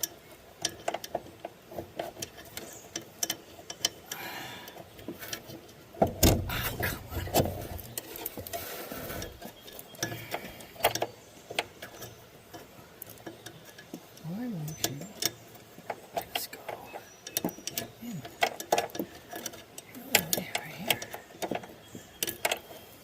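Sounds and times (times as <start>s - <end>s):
light metallic clicks and taps: 9.2s - 22.8s.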